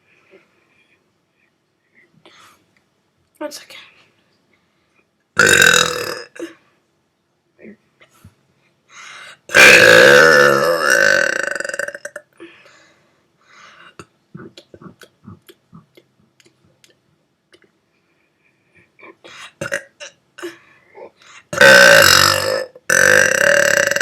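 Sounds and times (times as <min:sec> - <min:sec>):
person burping: 0:05.4 - 0:06.6, 0:09.5 - 0:12.4, 0:19.6 - 0:20.6, 0:21.5 - 0:24.0.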